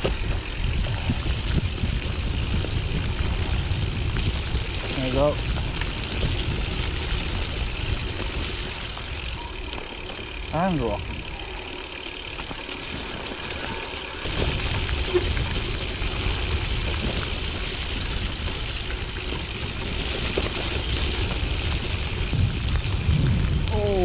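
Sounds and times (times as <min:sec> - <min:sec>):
wind buffeting microphone: 0:00.0 - 0:11.7, 0:13.4 - 0:24.0
heavy rain hissing: 0:00.0 - 0:24.0
low rumble: 0:21.9 - 0:24.0.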